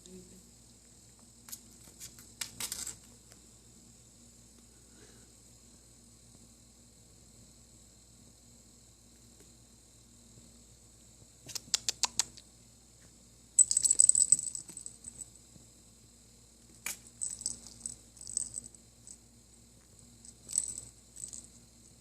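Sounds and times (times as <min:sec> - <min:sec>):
sharp clicks: 0:11.5 - 0:12.4
rattle toy jingling: 0:13.6 - 0:15.3, 0:17.0 - 0:19.2, 0:20.2 - 0:21.5.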